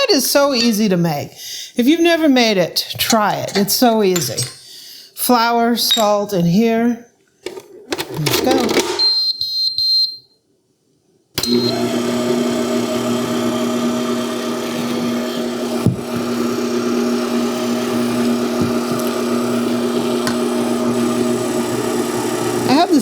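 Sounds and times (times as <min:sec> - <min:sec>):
stand mixer motor running: 0:11.4 - 0:23.0.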